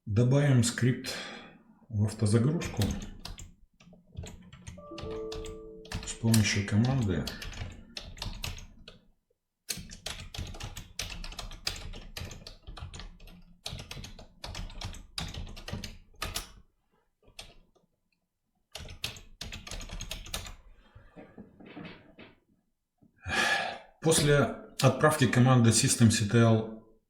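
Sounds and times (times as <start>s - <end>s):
computer keyboard typing: 2.7s - 9.0s, 9.7s - 16.6s, 17.3s - 17.6s, 18.8s - 20.6s.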